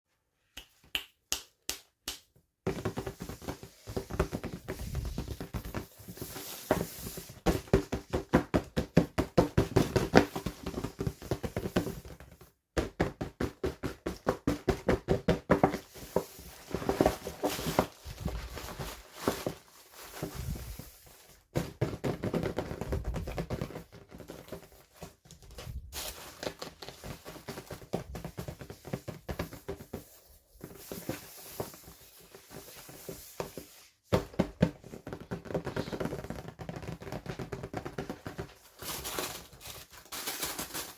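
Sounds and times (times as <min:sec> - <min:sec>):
plastic packaging clicking and tapping: 0:34.1 - 0:40.9.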